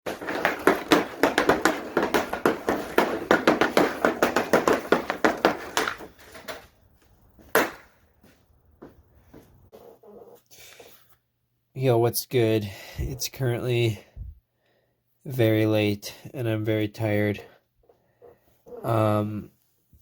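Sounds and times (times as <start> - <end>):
rapid sharp taps: 0.1 - 6.1.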